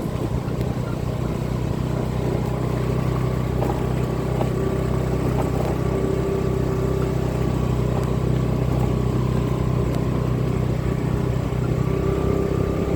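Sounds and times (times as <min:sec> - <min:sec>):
vehicle engine humming: 0:00.0 - 0:12.9.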